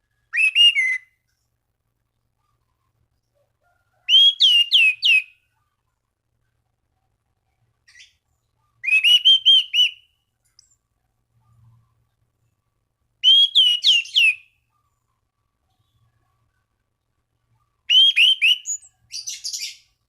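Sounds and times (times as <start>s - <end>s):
thrush singing whistled notes: 0.2s - 1.2s, 4.0s - 5.4s, 7.9s - 10.8s, 13.2s - 14.7s, 17.8s - 20.0s.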